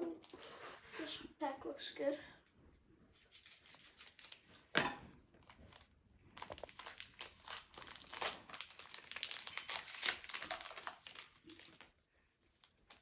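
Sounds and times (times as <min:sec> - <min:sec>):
foil pack crinkling and tearing: 0:03.5 - 0:04.4, 0:05.4 - 0:11.9.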